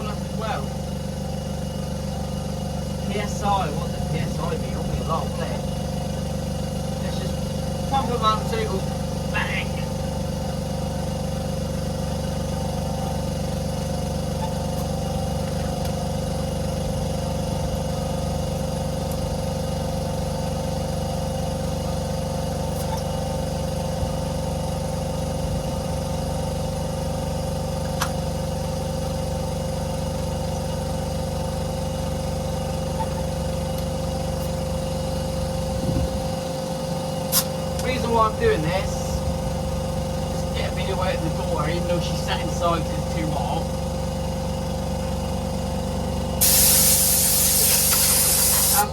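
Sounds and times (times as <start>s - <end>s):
electric tyre inflator humming: 9.9s - 42.6s, 43.6s - 48.9s.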